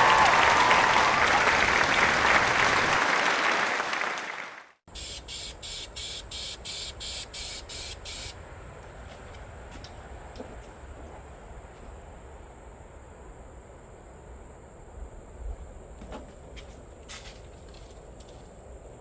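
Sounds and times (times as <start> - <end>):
applause: 0.0 - 4.8
insect chirping: 4.9 - 12.2
faint insect hum: 4.9 - 19.0.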